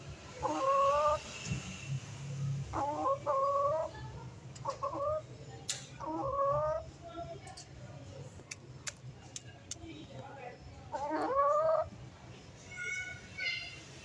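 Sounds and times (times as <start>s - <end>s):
chicken calling: 0.4s - 1.3s, 2.7s - 4.0s, 4.6s - 5.3s, 6.0s - 6.9s, 10.9s - 11.9s.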